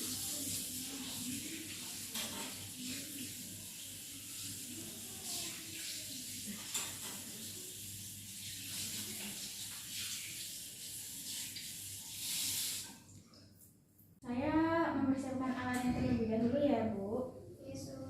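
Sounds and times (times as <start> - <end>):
tap water running and splashing: 0.0 - 13.4.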